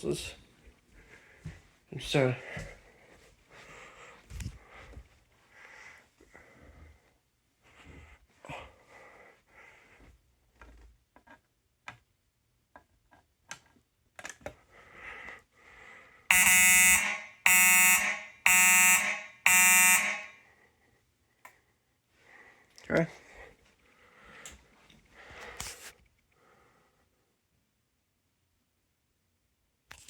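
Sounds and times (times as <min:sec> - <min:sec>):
faint clicks and handling noise: 0:10.0 - 0:12.1, 0:12.7 - 0:15.4
fire alarm horn blasts: 0:16.3 - 0:20.5.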